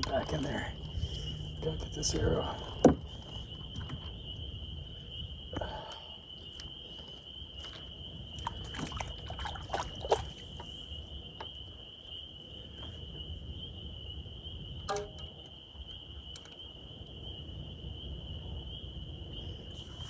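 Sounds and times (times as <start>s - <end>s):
insects trilling: 0.0s - 20.0s
water dripping: 5.6s - 10.8s, 14.8s - 15.6s
small clicks and knocks: 14.9s - 15.5s.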